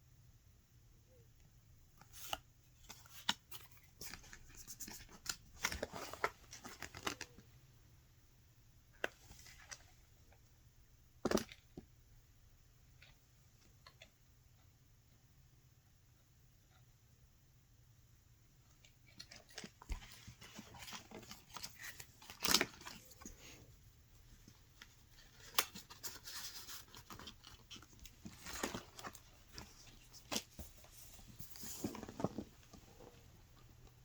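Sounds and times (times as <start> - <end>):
paper and card rustling: 2.0 - 7.4, 19.0 - 23.6, 24.4 - 33.2.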